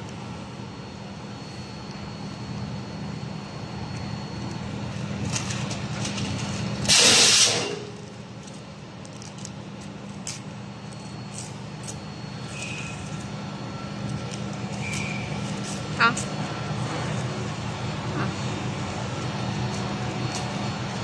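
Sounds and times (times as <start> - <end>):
machinery humming: 0.0 - 21.0
loud hissing burst: 6.9 - 7.8.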